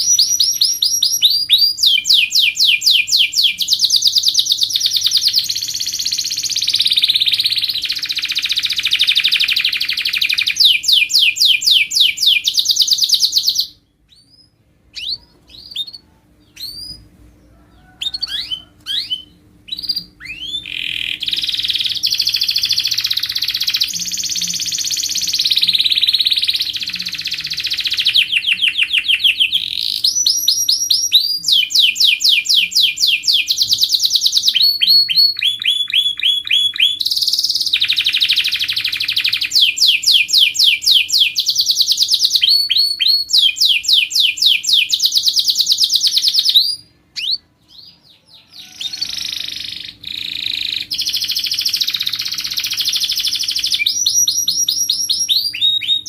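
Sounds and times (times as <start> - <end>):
canary singing trills: 0.0 - 56.0.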